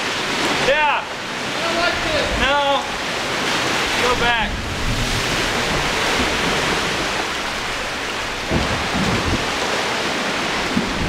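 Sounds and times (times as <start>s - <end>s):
water rushing and splashing: 0.0s - 11.0s
low thumps: 4.2s - 9.6s.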